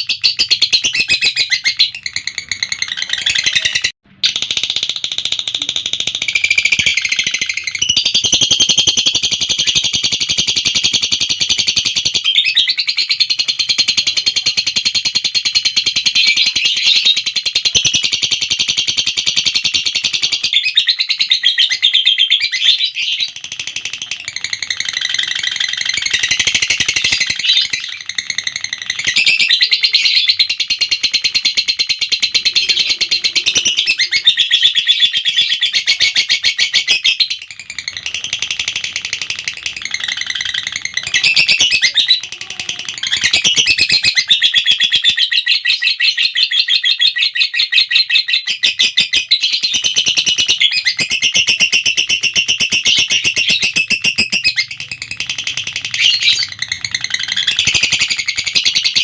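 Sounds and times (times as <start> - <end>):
bird shrill chattering trill: 24.0 - 59.0.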